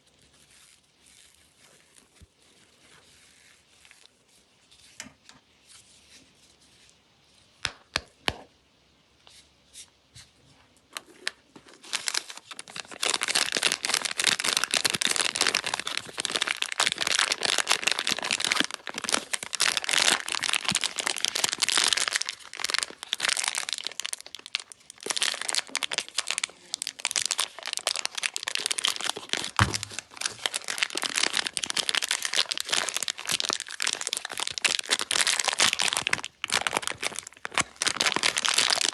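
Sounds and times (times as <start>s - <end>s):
wrapper crinkling and tearing: 0.0s - 4.1s, 11.0s - 38.9s.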